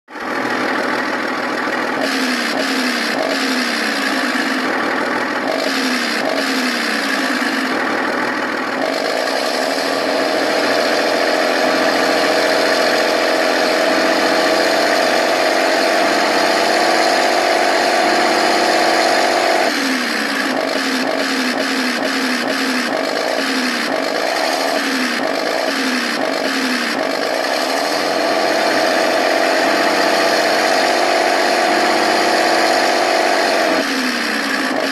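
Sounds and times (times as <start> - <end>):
simulated tank engine through speaker: 0.1 - 34.9.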